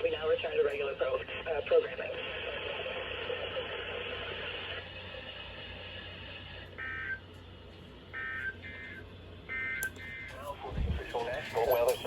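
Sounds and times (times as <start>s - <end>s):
radio static hiss: 0.0s - 6.6s.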